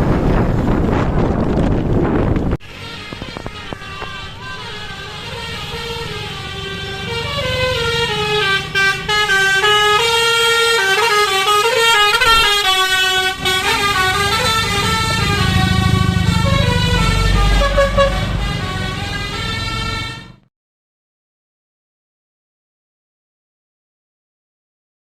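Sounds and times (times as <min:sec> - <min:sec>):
bus engine rumble: 0:00.0 - 0:20.5
bus horn playing a melody: 0:02.6 - 0:20.5.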